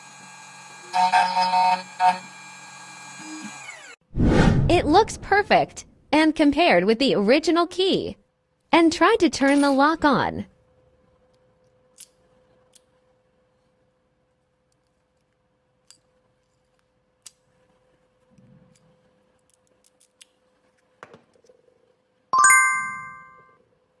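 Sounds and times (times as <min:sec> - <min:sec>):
bright ringing chime: 0:22.4 - 0:23.5.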